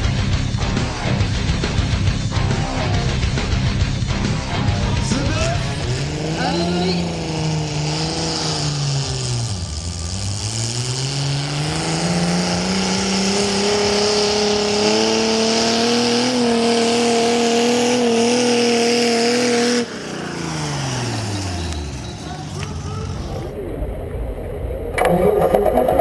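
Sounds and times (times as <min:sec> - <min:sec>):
tractor engine running hard: 0:00.0 - 0:23.8.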